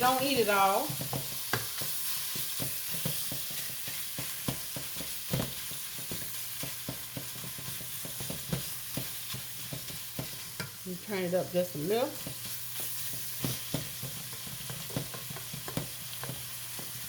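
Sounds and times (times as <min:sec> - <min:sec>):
meat and onions sizzling: 0:00.0 - 0:17.0.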